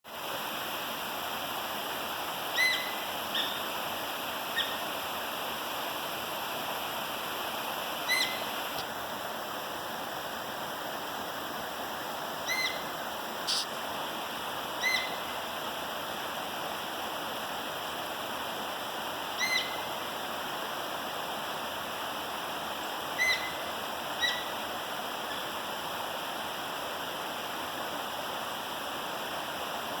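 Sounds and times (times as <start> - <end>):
deer calls: 13.5 - 13.7.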